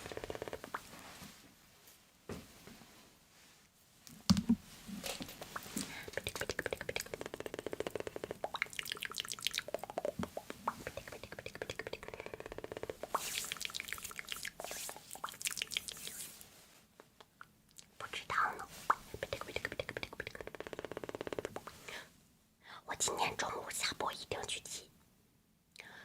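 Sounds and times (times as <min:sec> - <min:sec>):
wet mouth clicks and smacks: 0:04.3 - 0:16.3, 0:18.8 - 0:20.7.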